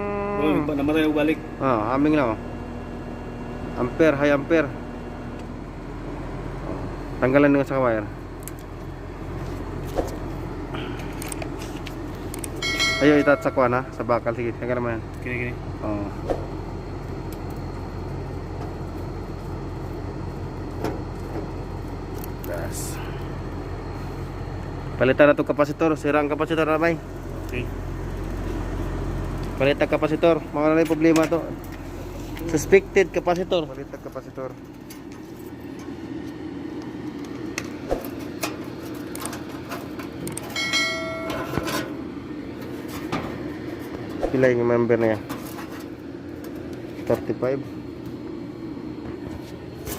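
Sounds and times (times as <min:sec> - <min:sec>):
air conditioner humming: 0:00.0 - 0:49.9
metal tools clinking: 0:12.4 - 0:14.0, 0:40.4 - 0:41.9
bright metallic ring: 0:12.6 - 0:14.2, 0:40.5 - 0:42.0.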